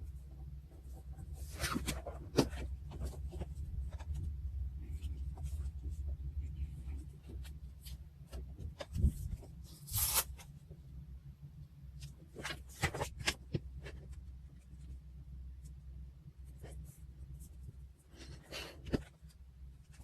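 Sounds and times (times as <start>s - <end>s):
paper tearing: 9.9s - 10.4s.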